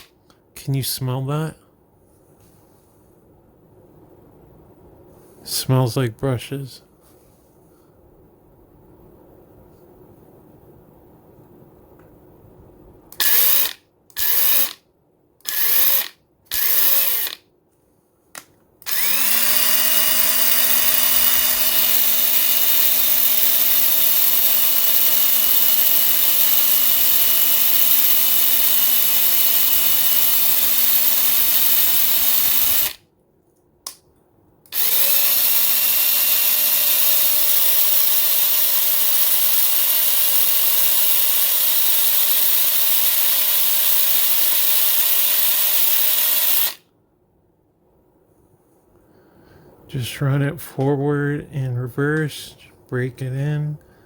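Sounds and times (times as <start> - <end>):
impact wrench motor whining: 13.1 - 14.8, 15.4 - 17.4, 18.8 - 33.0, 34.7 - 46.8.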